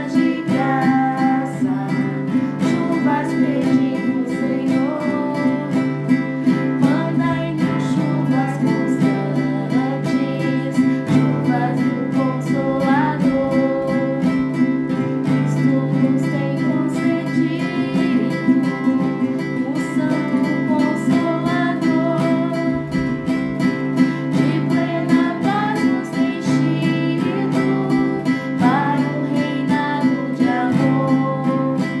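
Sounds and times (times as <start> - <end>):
acoustic guitar strumming: 0.0 - 32.0.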